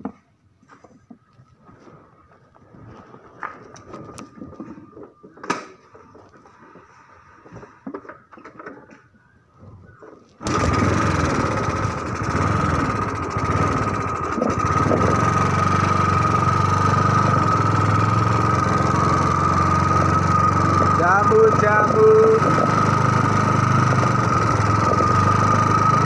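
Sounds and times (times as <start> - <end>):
small engine running: 10.4 - 26.0.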